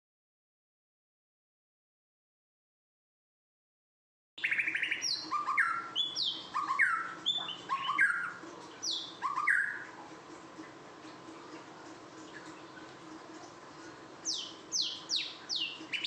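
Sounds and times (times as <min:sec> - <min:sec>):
bird whistling falling notes: 0:04.4 - 0:09.9.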